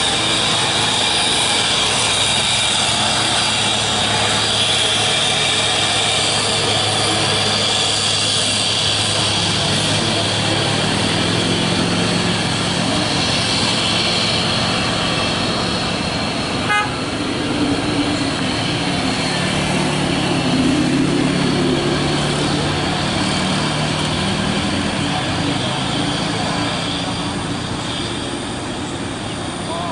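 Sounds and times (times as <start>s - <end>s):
truck engines running: 0.0s - 29.9s
short horn toot: 16.6s - 17.0s.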